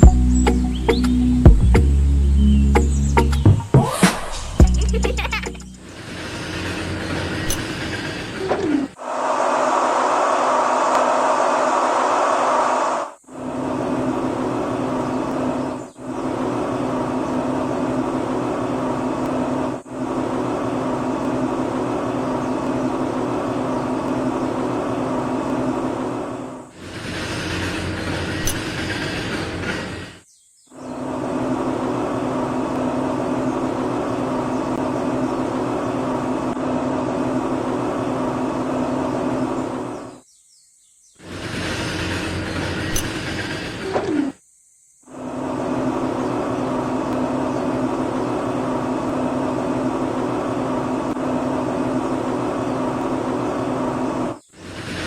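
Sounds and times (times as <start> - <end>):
small electric motor humming: 41.2 - 55.0.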